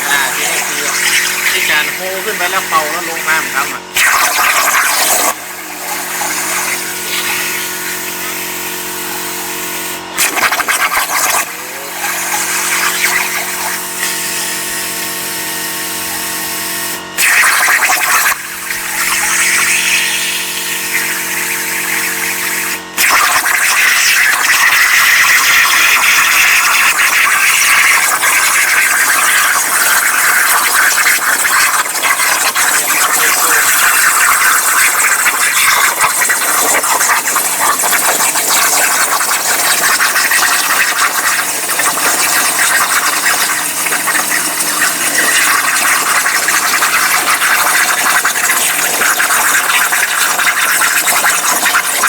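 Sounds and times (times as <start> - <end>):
humming tones: 0.0 - 4.4
plasma cutter hissing: 0.0 - 52.0.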